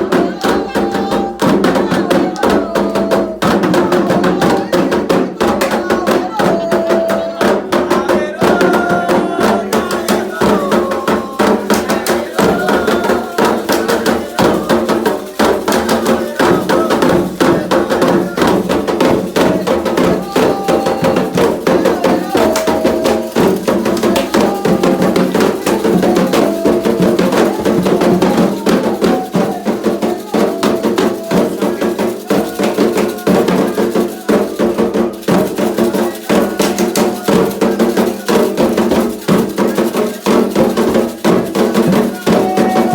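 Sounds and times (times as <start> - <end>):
hand drums playing: 0.0 - 42.9
voices singing a chant: 0.0 - 42.9.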